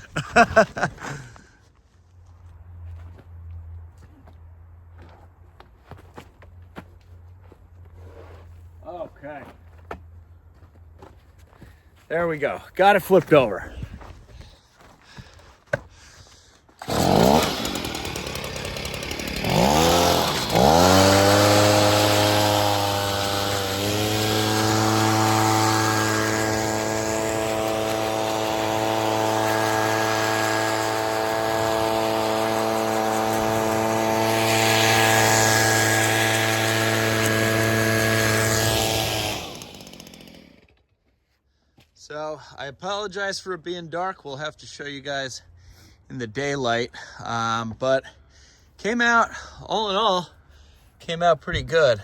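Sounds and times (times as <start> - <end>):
chainsaw engine revving: 16.8 - 40.8.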